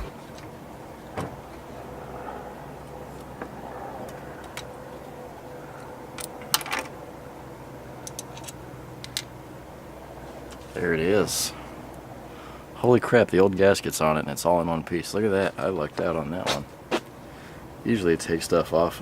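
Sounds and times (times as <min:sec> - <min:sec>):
steady low hum: 0:00.0 - 0:19.0
hand tools and metal parts clinking: 0:05.8 - 0:06.9, 0:08.0 - 0:09.3.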